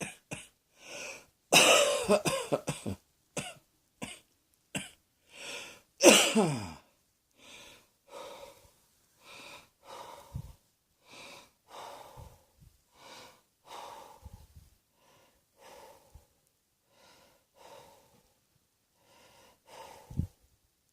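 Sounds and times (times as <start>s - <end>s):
person breathing heavily: 0.7s - 1.3s, 5.2s - 6.8s, 7.4s - 20.4s.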